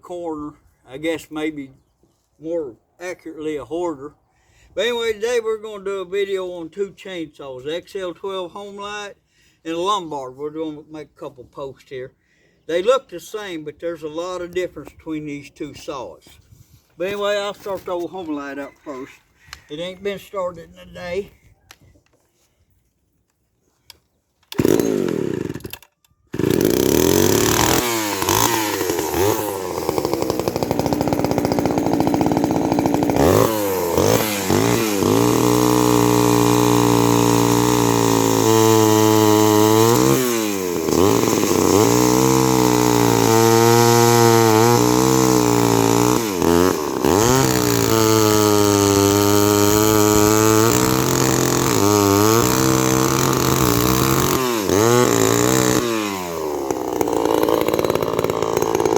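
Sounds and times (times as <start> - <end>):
chainsaw starting and revving: 24.5 - 58.9.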